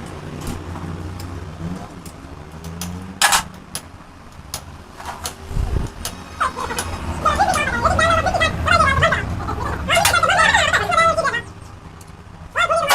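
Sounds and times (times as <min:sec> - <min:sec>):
sharp clicks and knocks: 0:00.0 - 0:07.0.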